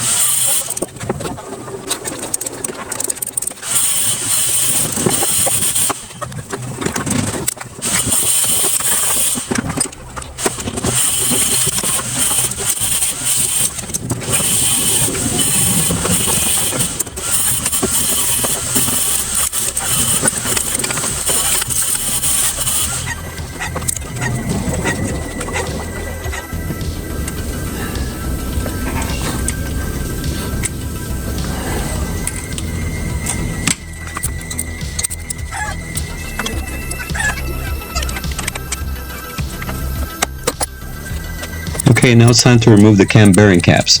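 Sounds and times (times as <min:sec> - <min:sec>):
power wrench whining: 0:00.0 - 0:44.0.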